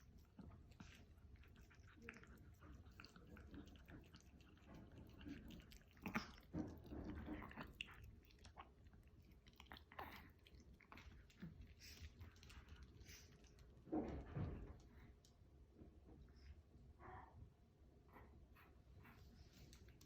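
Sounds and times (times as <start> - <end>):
dog chewing: 0.0 - 13.8.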